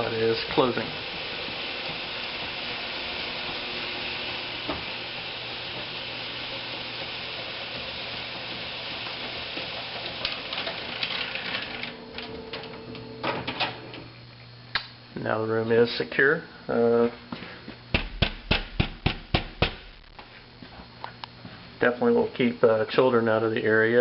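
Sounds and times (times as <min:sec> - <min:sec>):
low motor hum: 0:00.0 - 0:11.0, 0:17.2 - 0:21.4
metal shutter rattling down: 0:10.0 - 0:11.9.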